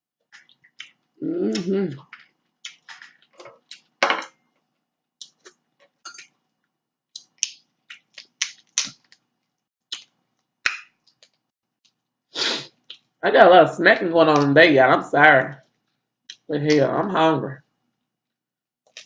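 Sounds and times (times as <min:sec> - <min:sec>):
mouth smacking and chewing: 0:00.4 - 0:04.0, 0:07.1 - 0:09.2, 0:09.9 - 0:11.4, 0:12.8 - 0:13.1.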